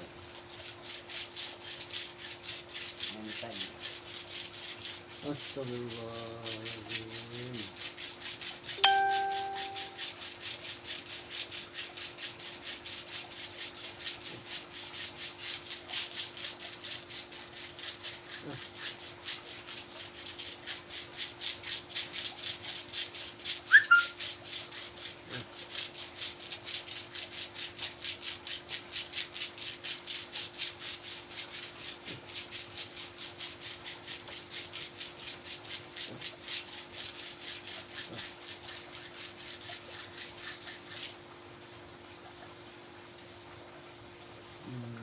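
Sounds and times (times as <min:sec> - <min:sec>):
hand rubbing on skin: 0:01.2 - 0:10.3.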